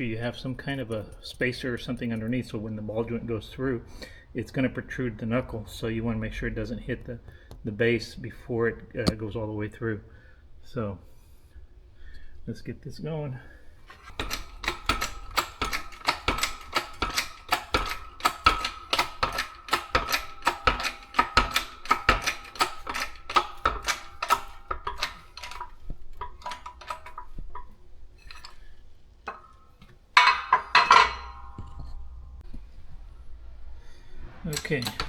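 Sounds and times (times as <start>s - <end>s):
loud metallic clatter: 13.8s - 28.7s, 29.3s - 33.2s, 34.1s - 35.0s
shop press clicking with ringing: 13.9s - 28.6s, 29.3s - 32.0s, 34.5s - 35.0s.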